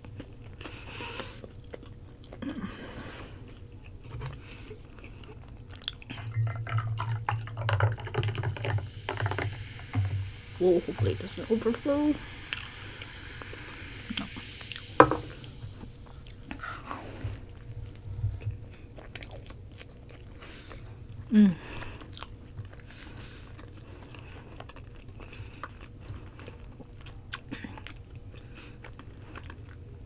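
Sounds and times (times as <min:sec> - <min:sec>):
chewing and crunching: 0:00.0 - 0:07.1, 0:21.8 - 0:30.0
drink fizzing: 0:05.8 - 0:18.7.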